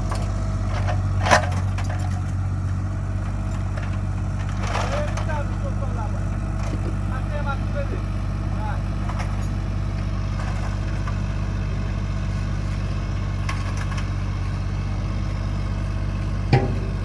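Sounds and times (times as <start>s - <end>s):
vehicle engine idling: 0.0s - 17.0s
short knock: 16.5s - 17.0s.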